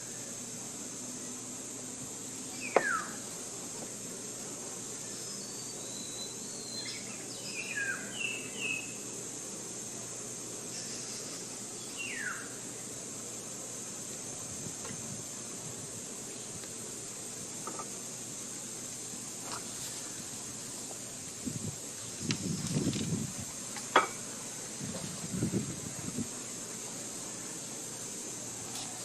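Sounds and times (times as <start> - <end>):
high insect drone: 0.0 - 29.0
birds whistling and chirping: 2.5 - 3.2, 5.1 - 9.0, 11.9 - 12.5.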